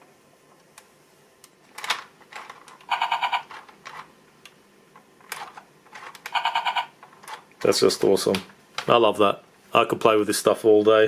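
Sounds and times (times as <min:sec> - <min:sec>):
stuttering electronic tone: 0:02.9 - 0:03.5, 0:06.4 - 0:06.9
toy noisy burst: 0:02.9 - 0:03.5, 0:06.3 - 0:07.0.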